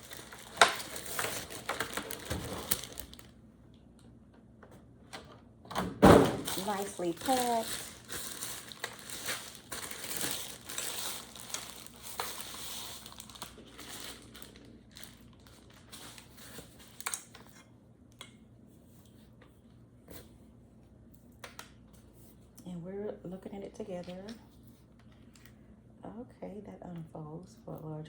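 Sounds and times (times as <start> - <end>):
packaging crinkling and rustling: 0.0 - 3.4, 6.2 - 17.5.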